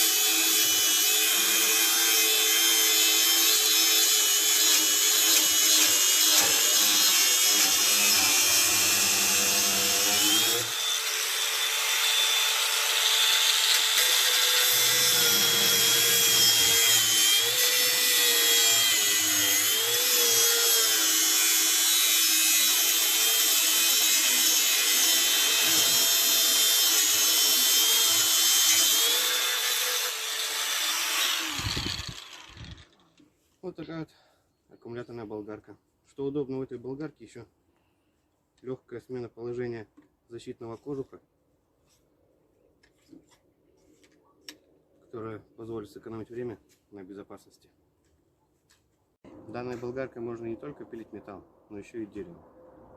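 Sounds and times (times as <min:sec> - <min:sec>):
angle grinder cutting: 0:00.0 - 0:33.1.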